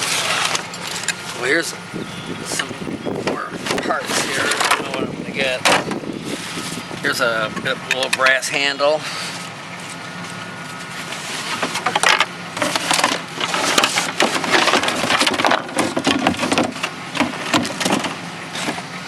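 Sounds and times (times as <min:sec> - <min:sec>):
junk clattering as handled: 0:03.3 - 0:06.1, 0:11.4 - 0:18.9.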